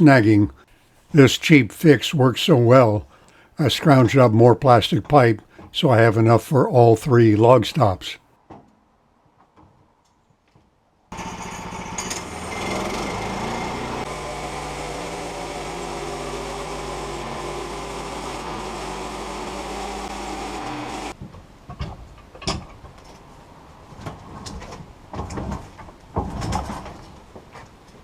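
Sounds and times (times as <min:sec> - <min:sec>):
gas engine running: 0:11.1 - 0:21.2.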